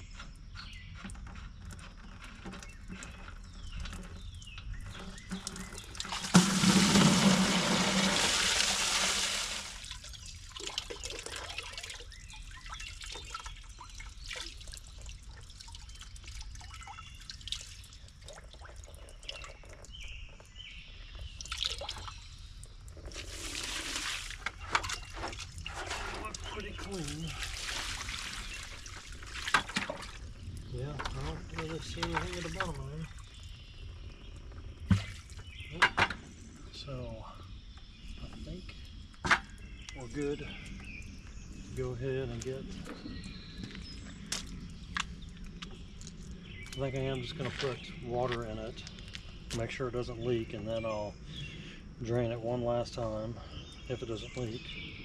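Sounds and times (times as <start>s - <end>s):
water gushing and splashing: 5.0s - 12.0s, 23.0s - 33.4s
water trickling and dripping: 8.0s - 35.8s, 36.8s - 50.0s.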